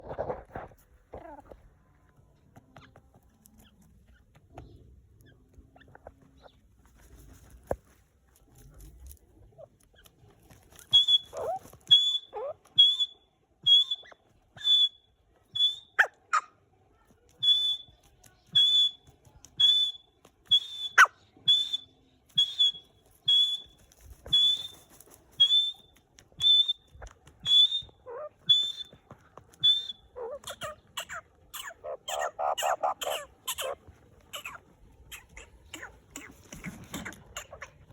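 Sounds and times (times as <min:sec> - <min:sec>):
francolin high whistled calls: 0:28.5 - 0:28.9, 0:29.6 - 0:30.1.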